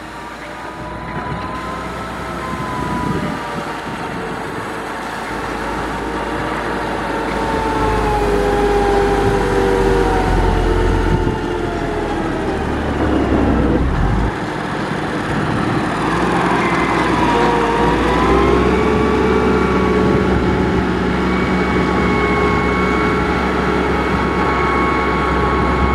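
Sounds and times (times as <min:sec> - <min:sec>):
construction machinery engine drone: 0:00.0 - 0:25.9
machinery whine: 0:00.0 - 0:25.9
deep rumble: 0:05.6 - 0:24.8.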